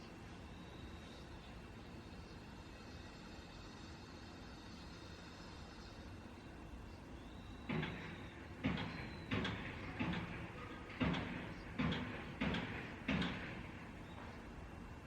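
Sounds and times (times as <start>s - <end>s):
sharp knocks: 7.7s - 13.9s.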